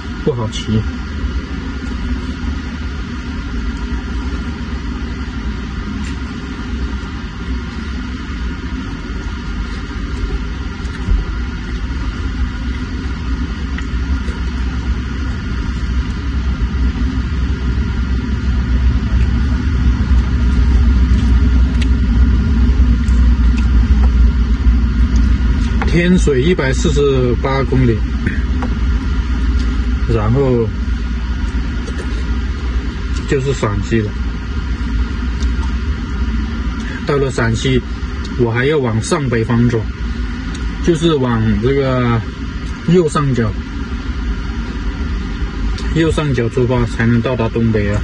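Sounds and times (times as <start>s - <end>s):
wind and road noise: 1.1s - 38.2s.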